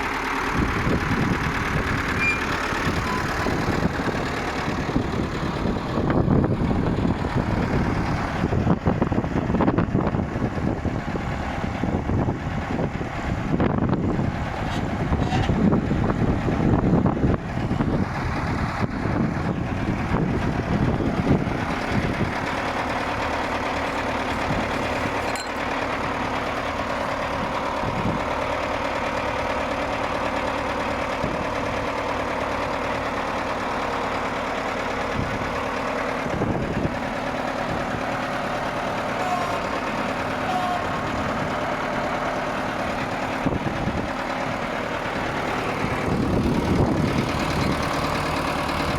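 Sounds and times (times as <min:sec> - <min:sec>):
tractor engine idling: 0:00.0 - 0:48.9
wind buffeting microphone: 0:00.5 - 0:02.2, 0:02.8 - 0:25.2, 0:26.0 - 0:28.5, 0:35.0 - 0:38.8, 0:40.8 - 0:48.9.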